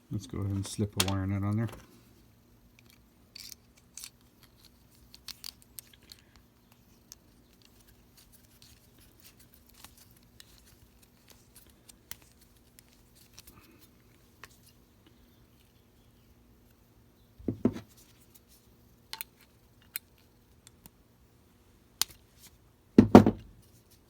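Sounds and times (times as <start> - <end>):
wire nut clicking and scraping: 2.8 - 13.6.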